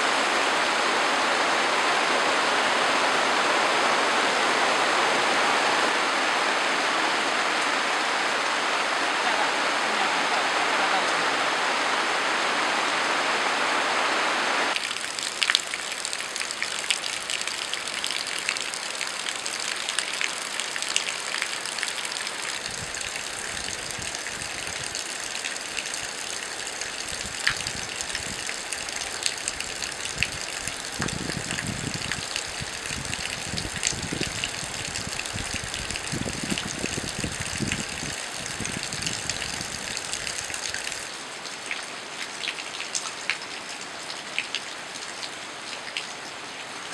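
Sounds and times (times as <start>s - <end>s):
rain drops striking: 0.0s - 46.9s
rushing water: 0.0s - 46.9s.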